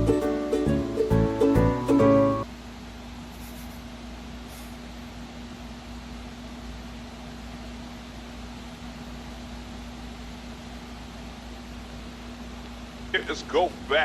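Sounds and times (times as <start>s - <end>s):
constant low hum: 0.0s - 14.0s
steady background hiss: 3.9s - 14.0s.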